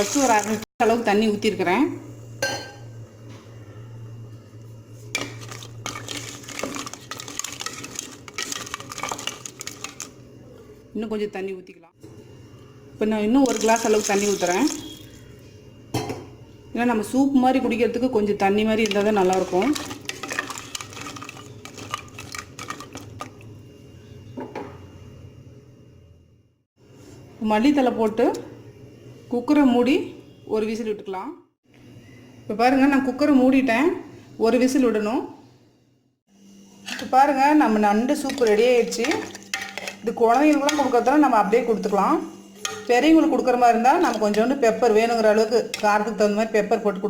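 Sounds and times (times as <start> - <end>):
metal spoon scraping a pan: 5.1 - 10.1, 18.8 - 23.2, 36.8 - 37.3, 38.1 - 41.9, 42.6 - 43.1
metal utensil clinking on pot: 38.2 - 41.2, 42.6 - 43.0.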